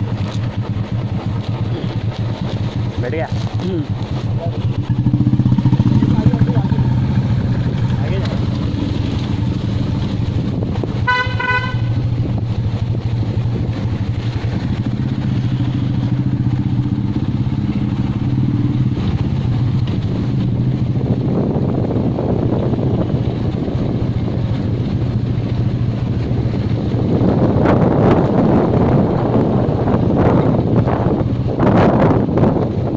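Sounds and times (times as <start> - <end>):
motorcycle engine running: 0.0 - 32.9
wind on microphone: 0.0 - 32.9
horn honk: 11.0 - 12.0.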